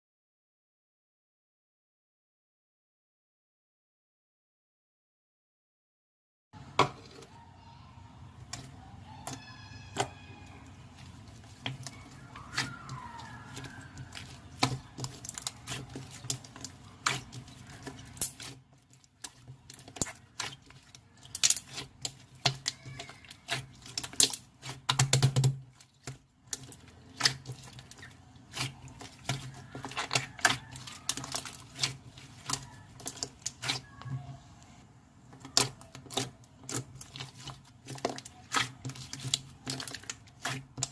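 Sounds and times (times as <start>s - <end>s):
slime clicking and popping: 13.6s - 18.5s, 19.2s - 33.8s.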